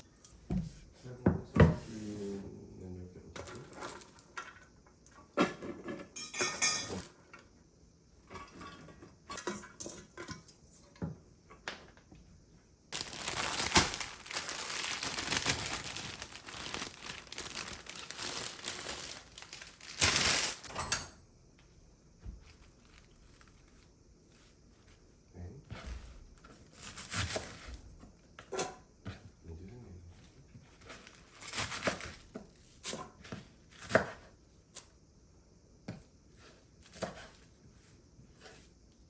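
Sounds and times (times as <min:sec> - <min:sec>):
dishes and pots clinking: 0:05.4 - 0:07.1, 0:08.3 - 0:11.1, 0:20.7 - 0:21.2.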